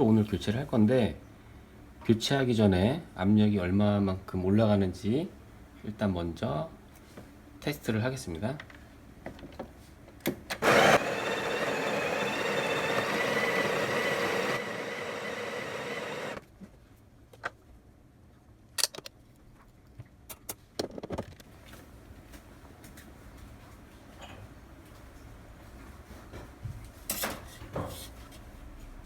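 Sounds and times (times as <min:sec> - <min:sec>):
espresso machine running: 0:10.6 - 0:16.4.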